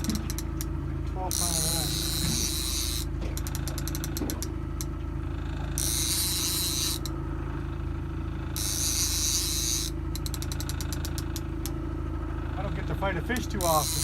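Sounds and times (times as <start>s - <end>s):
fishing reel hissing and clicking: 0.0s - 0.7s, 1.3s - 4.9s, 5.8s - 7.1s, 8.6s - 11.7s, 13.3s - 14.0s
boat engine running: 0.0s - 14.0s.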